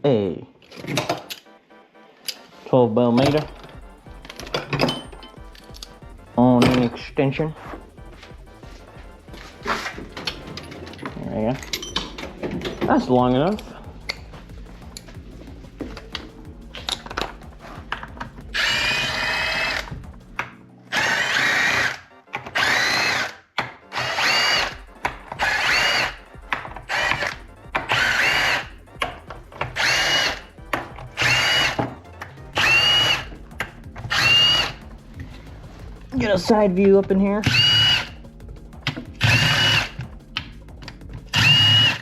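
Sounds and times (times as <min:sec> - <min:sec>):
power drill motor whine: 0:18.5 - 0:19.9, 0:20.9 - 0:24.8, 0:25.4 - 0:26.2, 0:26.9 - 0:28.7, 0:29.8 - 0:30.4, 0:31.2 - 0:31.8, 0:32.6 - 0:33.3, 0:34.1 - 0:34.8, 0:37.4 - 0:38.1, 0:39.2 - 0:40.0, 0:41.3 - 0:42.0.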